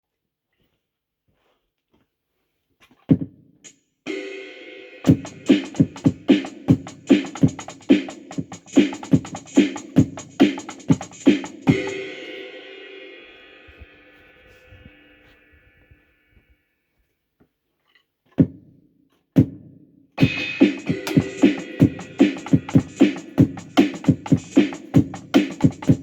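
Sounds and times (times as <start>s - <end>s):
drum machine hits: 5.1s - 12.4s, 20.2s - 26.0s
held synth chord: 11.7s - 16.5s, 20.3s - 23.0s.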